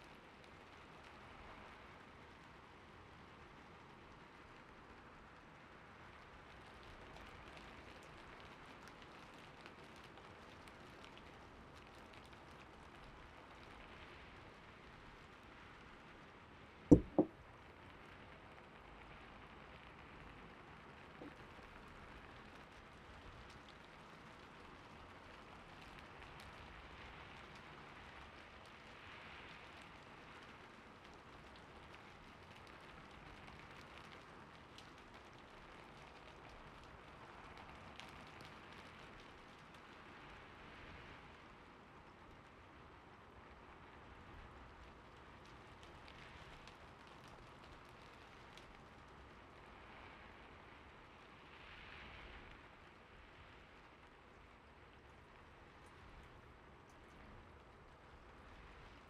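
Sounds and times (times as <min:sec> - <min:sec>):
gentle rain: 0:00.0 - 0:59.0
dull thumps: 0:16.9 - 0:17.3.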